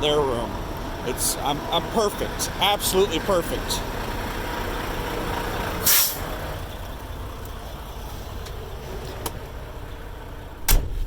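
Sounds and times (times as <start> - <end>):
truck engine idling: 0.0 - 11.0
air brake hiss: 5.8 - 6.3.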